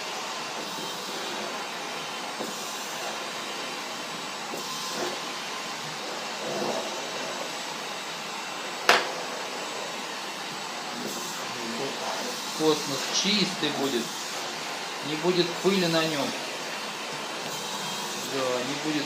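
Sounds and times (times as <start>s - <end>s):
vacuum cleaner running: 0.0s - 19.0s.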